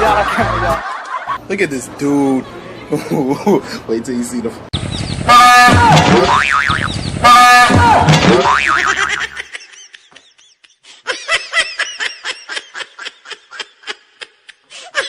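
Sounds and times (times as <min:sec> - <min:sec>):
person laughing: 0:00.0 - 0:01.2, 0:02.9 - 0:03.7, 0:08.8 - 0:15.0.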